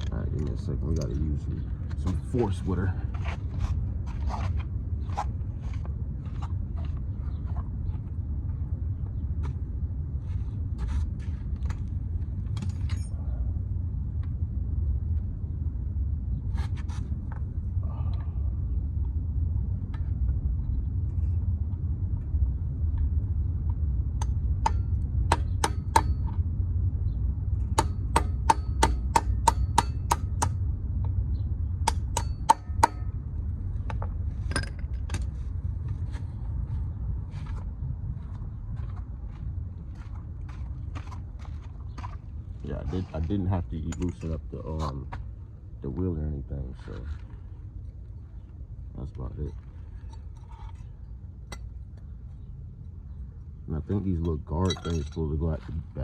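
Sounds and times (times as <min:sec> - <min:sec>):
low rumble: 0:00.0 - 0:56.0
hand tools clanging on metal: 0:43.8 - 0:45.0, 0:54.2 - 0:55.4.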